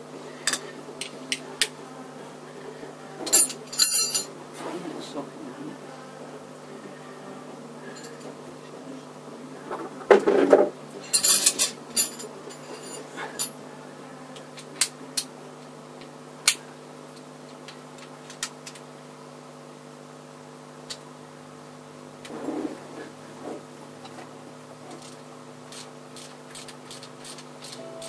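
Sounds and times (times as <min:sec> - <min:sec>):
metal tools clanking: 0:03.2 - 0:04.3, 0:10.2 - 0:13.6.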